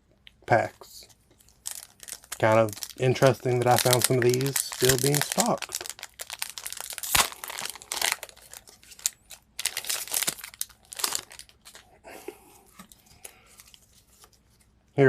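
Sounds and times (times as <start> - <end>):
foil wrapper tearing and crinkling: 1.4 - 11.8.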